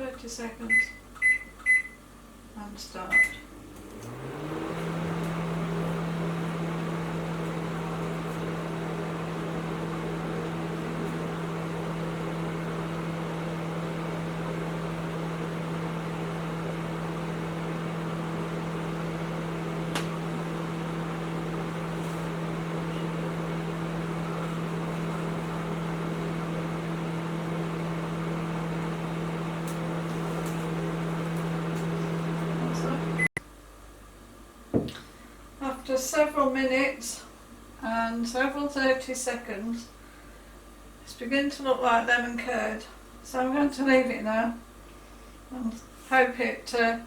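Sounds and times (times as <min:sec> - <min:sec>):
microwave oven hum: 0:00.0 - 0:47.0
cooling fan rushing: 0:02.2 - 0:47.0.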